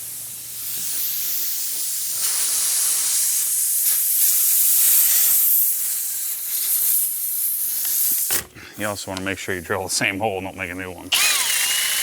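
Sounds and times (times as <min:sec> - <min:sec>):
air hissing from a tire: 0:00.0 - 0:09.0
reamer worked in a tire: 0:00.0 - 0:09.3, 0:11.1 - 0:12.0.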